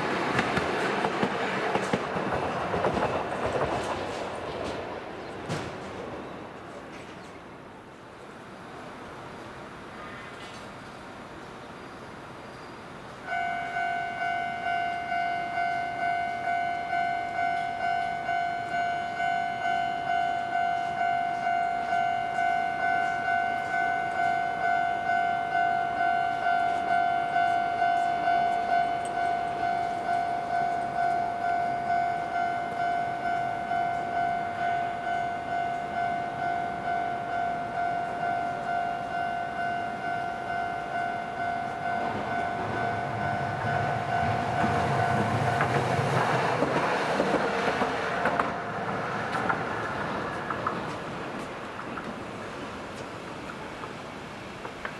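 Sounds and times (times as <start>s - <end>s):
level crossing alarm bell: 13.3s - 46.0s.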